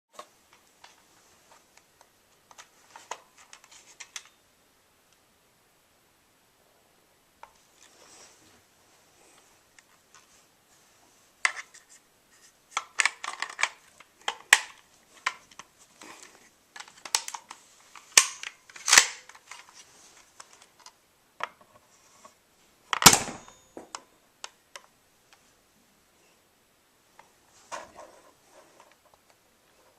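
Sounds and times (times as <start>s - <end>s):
toy pistol shot pop: 23.0s - 23.6s.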